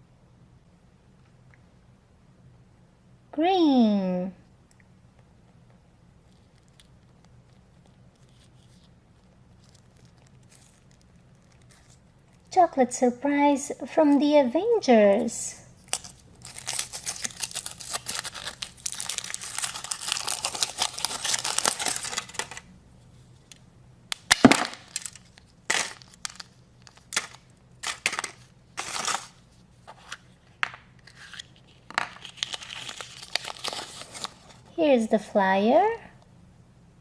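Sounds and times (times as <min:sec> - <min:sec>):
foil wrapper crinkling: 0:06.3 - 0:12.5, 0:15.8 - 0:22.7, 0:24.3 - 0:30.2, 0:31.0 - 0:34.7
chocolate shell cracking: 0:15.8 - 0:22.7, 0:23.5 - 0:29.4.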